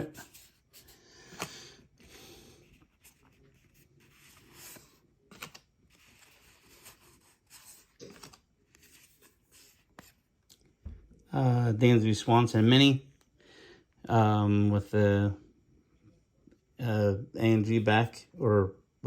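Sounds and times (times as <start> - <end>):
trading cards sliding and rubbing: 0.1 - 10.3.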